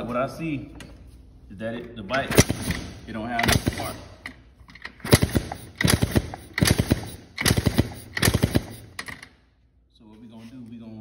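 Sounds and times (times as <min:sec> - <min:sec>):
two-stroke engine kick-starting: 0:05.0 - 0:09.2.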